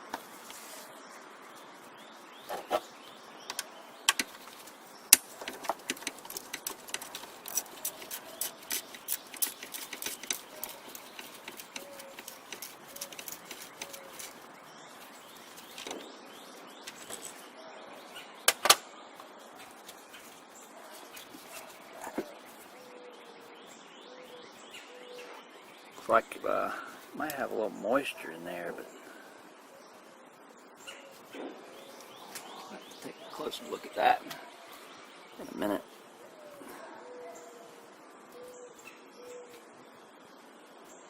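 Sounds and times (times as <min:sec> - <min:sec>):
hand tools clicking and tapping: 0:03.5 - 0:14.4.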